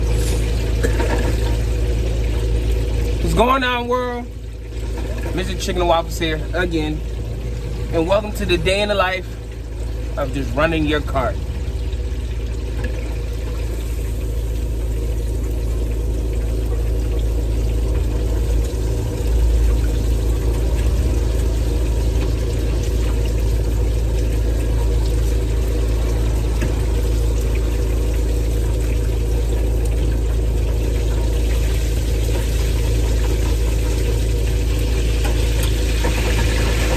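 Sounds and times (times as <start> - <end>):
machine humming: 0.0 - 36.9.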